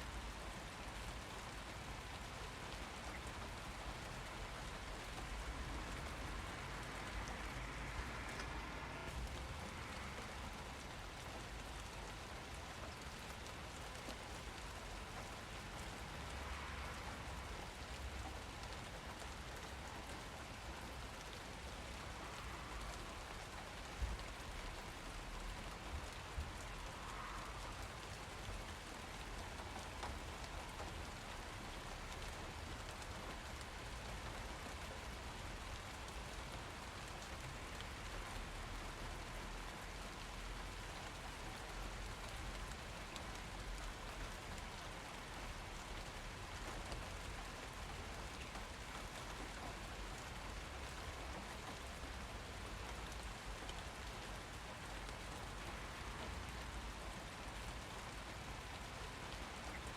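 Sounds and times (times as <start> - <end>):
rain pattering: 0.0 - 59.9.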